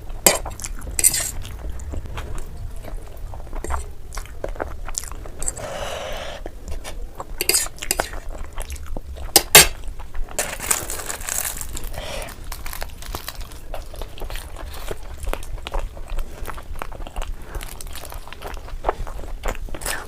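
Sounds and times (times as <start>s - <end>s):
chewing noodles: 0.0s - 20.0s
utensils clinking against a dish: 1.0s - 1.4s, 7.4s - 8.2s.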